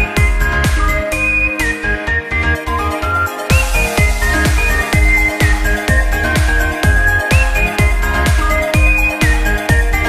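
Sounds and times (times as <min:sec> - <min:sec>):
deep kick drums: 0:00.0 - 0:01.1, 0:03.5 - 0:10.0
held synth notes: 0:00.0 - 0:10.0.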